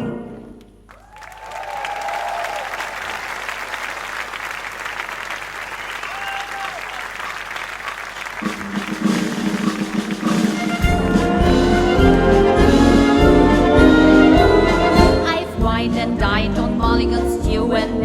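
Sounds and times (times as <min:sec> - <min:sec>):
audience applause: 0:00.9 - 0:10.8
wind band playing: 0:08.4 - 0:16.8.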